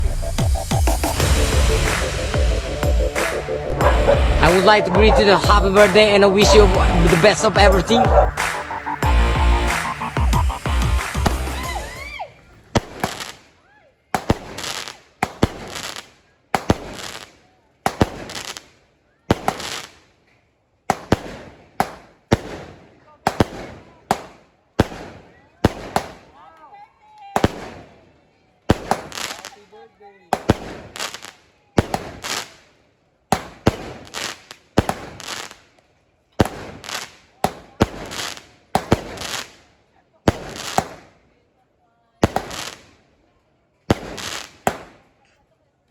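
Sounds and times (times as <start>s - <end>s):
fireworks bangs: 0.0s - 13.5s, 14.1s - 18.7s, 19.3s - 20.0s, 20.9s - 26.4s, 27.3s - 28.0s, 28.7s - 29.6s, 30.3s - 32.6s, 33.3s - 35.7s, 36.4s - 39.6s, 40.3s - 41.2s, 42.2s - 43.0s, 43.8s - 45.1s
fireworks crackle: 0.0s - 26.4s, 27.2s - 28.1s, 28.7s - 41.2s, 42.2s - 43.1s, 43.8s - 45.2s.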